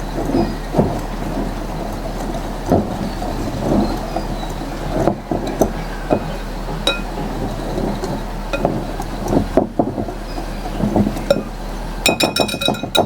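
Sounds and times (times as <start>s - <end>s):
scraping rustle of stirring: 0.0s - 13.0s
utensil clinking against bowl: 5.0s - 7.3s, 11.2s - 13.0s.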